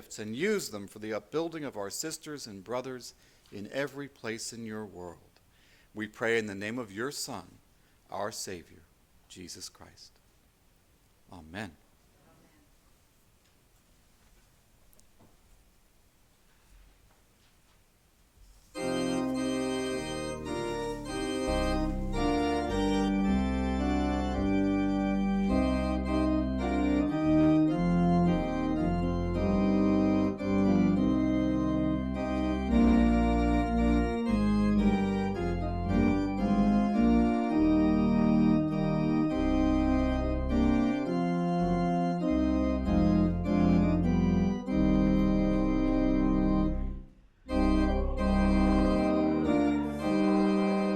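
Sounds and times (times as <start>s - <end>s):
church organ playing a hymn: 18.7s - 50.9s.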